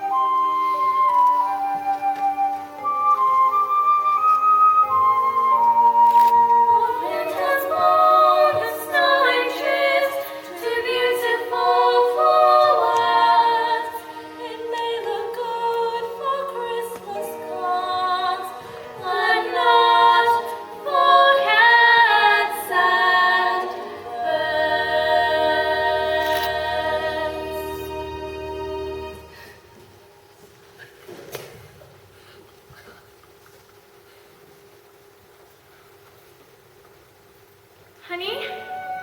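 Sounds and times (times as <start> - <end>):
choir singing in harmony: 4.8 - 29.7.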